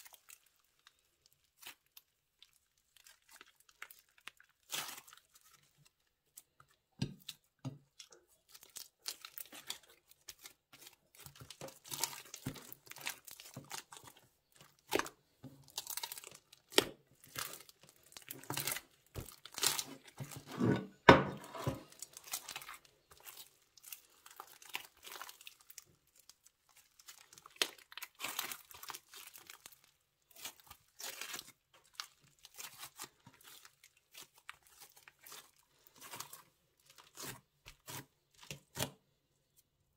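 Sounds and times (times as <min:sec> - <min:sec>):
plastic bags crinkling: 0:08.5 - 0:20.5, 0:21.4 - 0:38.7.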